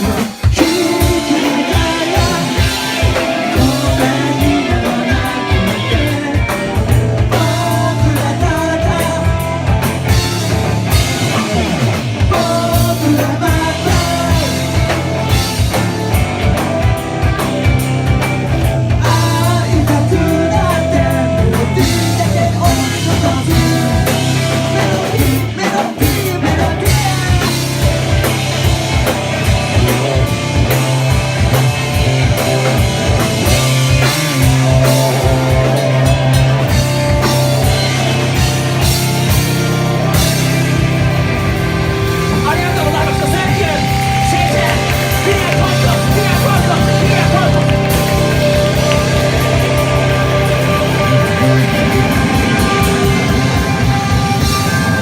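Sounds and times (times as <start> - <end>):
person singing: 0.0 - 15.4, 18.8 - 28.0, 42.3 - 55.0
bass guitar: 0.0 - 55.0
drum kit: 0.0 - 55.0
electric guitar: 0.0 - 55.0.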